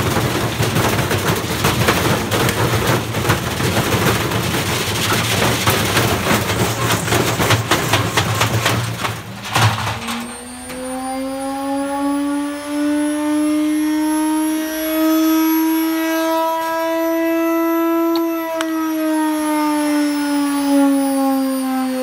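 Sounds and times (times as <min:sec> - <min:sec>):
bricks banging in washing machine drum: 0:00.0 - 0:10.0
washing machine motor whine: 0:00.0 - 0:22.0.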